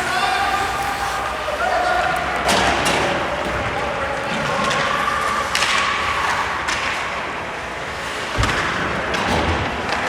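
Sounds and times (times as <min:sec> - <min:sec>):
hockey sticks clacking on puck: 0:00.0 - 0:07.4.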